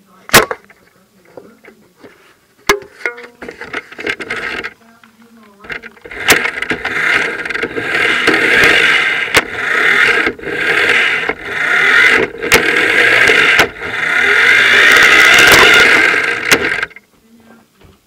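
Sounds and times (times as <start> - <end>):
sharp clicks and knocks: 2.6 - 17.0
toy car motor whining: 5.7 - 17.0.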